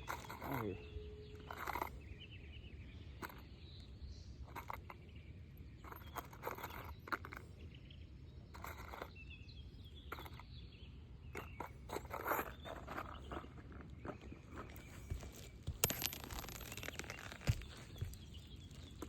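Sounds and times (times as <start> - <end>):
shingles scraping and crunching: 11.4 - 19.0.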